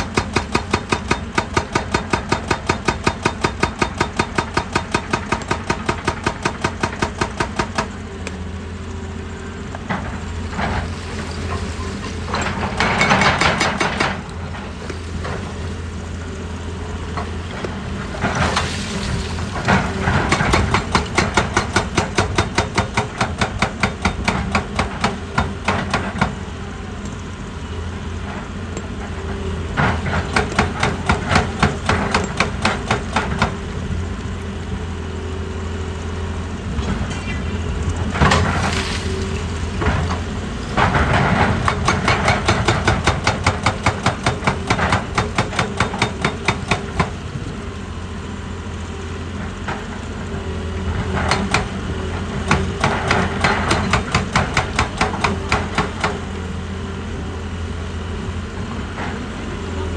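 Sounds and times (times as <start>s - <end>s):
excavator engine running: 0.0s - 59.9s
rapid hammering strikes: 41.6s - 47.2s, 52.5s - 56.2s.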